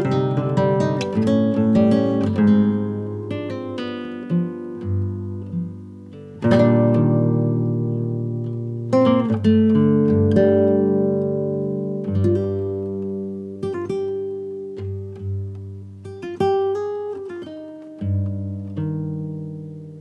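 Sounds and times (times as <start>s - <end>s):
slow plucked melody: 0.0s - 20.0s.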